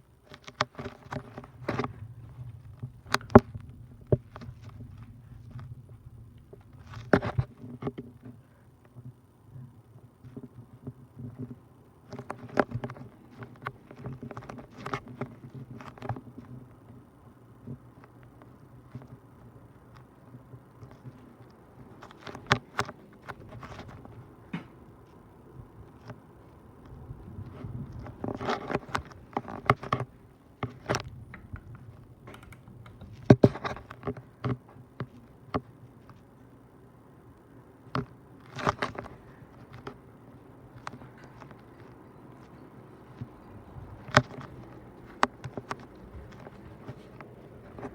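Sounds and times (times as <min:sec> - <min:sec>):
ceiling fan humming: 0:00.0 - 0:47.9
clicks and rattles: 0:26.8 - 0:36.2.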